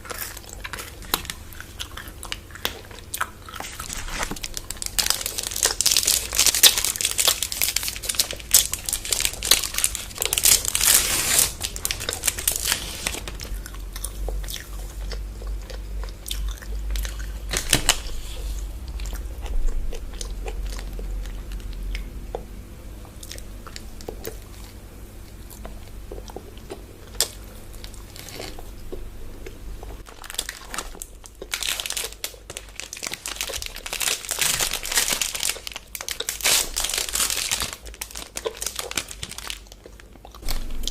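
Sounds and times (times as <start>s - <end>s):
crunchy chewing: 0.0s - 40.9s
plastic wrapper crinkling: 2.3s - 13.6s, 30.0s - 40.9s.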